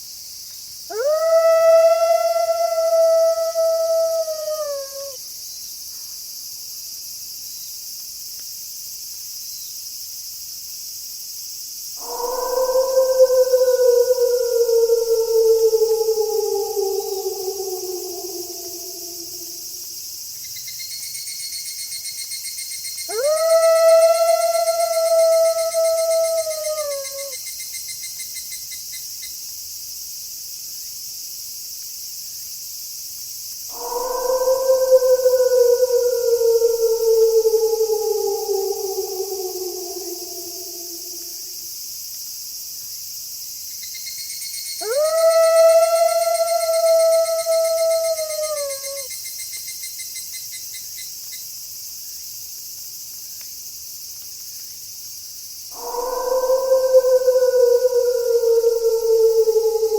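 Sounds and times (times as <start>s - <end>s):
crickets trilling: 0.0s - 8.0s, 8.6s - 59.9s
wolf howling: 0.9s - 5.2s, 12.0s - 20.0s, 23.1s - 27.4s, 33.7s - 41.7s, 44.8s - 49.1s, 55.7s - 59.9s.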